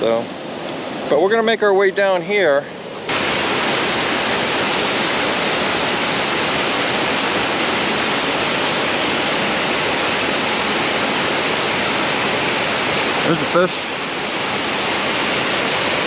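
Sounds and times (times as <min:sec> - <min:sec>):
creek water rushing: 0:00.0 - 0:16.0.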